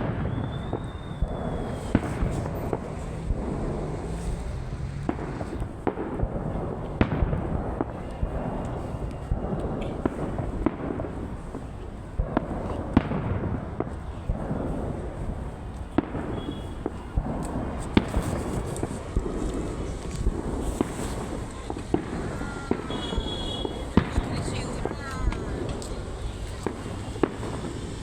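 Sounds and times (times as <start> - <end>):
crackling rumble: 0.0 - 28.0
firework shells bursting: 0.0 - 28.0.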